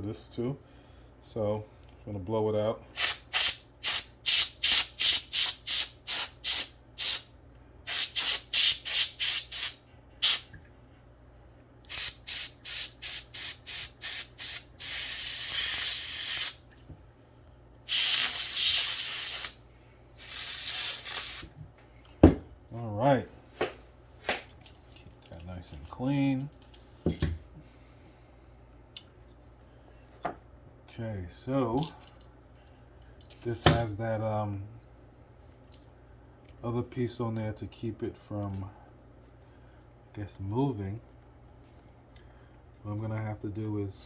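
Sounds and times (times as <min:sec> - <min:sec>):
air blower puffs and blasts: 0:03.0 - 0:07.3, 0:07.9 - 0:10.5, 0:11.9 - 0:16.6, 0:17.9 - 0:19.6, 0:20.2 - 0:21.6.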